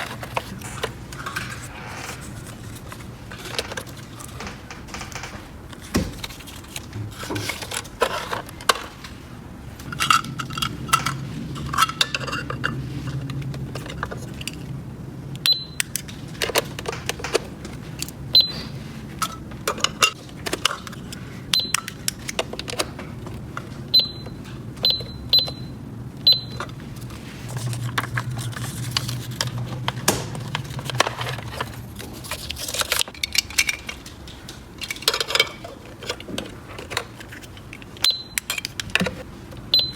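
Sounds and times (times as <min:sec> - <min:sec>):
plastic toy pieces clattering: 0:09.8 - 0:12.7, 0:27.6 - 0:37.7.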